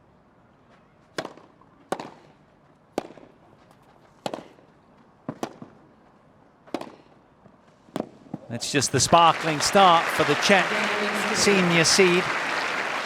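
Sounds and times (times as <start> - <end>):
tennis ball struck by rackets: 1.2 - 2.3, 5.3 - 5.7, 6.7 - 7.0.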